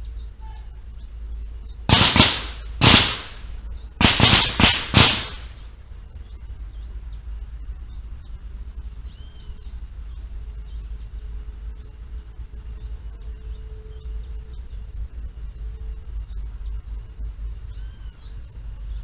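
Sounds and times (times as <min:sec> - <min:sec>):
faint bird chirps: 0:00.0 - 0:02.0, 0:12.8 - 0:19.0
gunshots echoing: 0:01.9 - 0:05.7.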